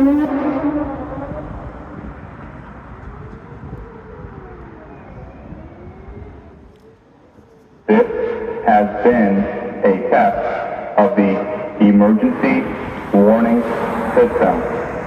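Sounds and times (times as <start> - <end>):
low rumble: 0.0 - 6.7
distant siren wailing: 0.0 - 15.0
siren falling tone echoing: 0.0 - 15.0.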